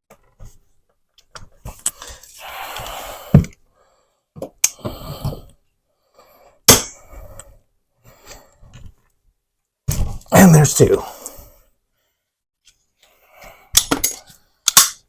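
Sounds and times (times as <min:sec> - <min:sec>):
locking pliers scraping metal and plastic: 0:13.8 - 0:15.0.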